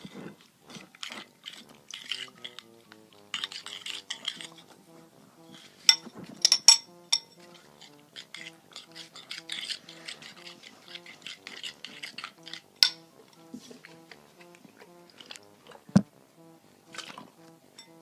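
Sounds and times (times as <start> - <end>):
quiet background music: 0.0 - 18.0
utensil stirring slime in bowl: 0.7 - 2.6, 3.2 - 4.6, 7.2 - 13.0.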